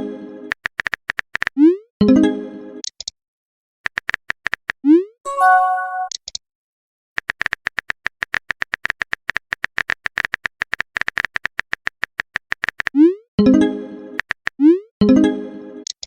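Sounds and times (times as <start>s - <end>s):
chime: 5.3s - 6.1s.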